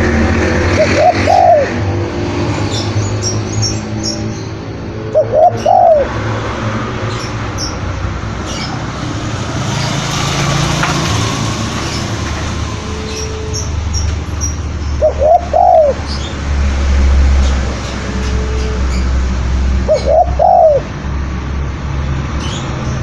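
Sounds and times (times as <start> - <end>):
dove cooing: 0.7 - 1.9, 4.0 - 7.8, 14.8 - 16.3, 19.8 - 20.9
small birds chirping: 7.0 - 10.7, 12.9 - 16.4.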